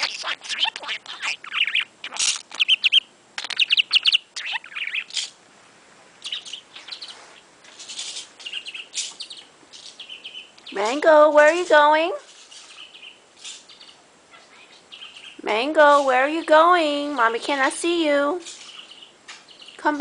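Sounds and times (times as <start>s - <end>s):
budgerigar chattering: 0.0s - 5.4s, 6.2s - 7.2s, 7.8s - 10.8s, 12.2s - 16.1s, 18.4s - 19.8s.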